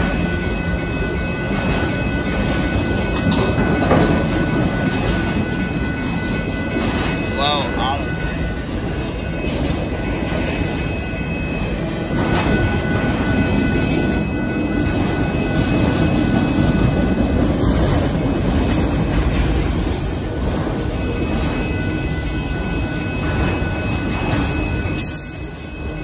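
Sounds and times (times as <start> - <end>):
clacks over rail joints: 0.0 - 7.4, 12.1 - 21.8
train wheels rumbling on rail: 0.0 - 26.0.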